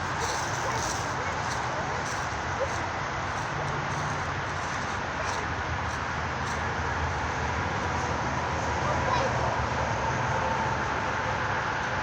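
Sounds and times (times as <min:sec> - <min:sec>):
highway traffic drone: 0:00.0 - 0:12.0.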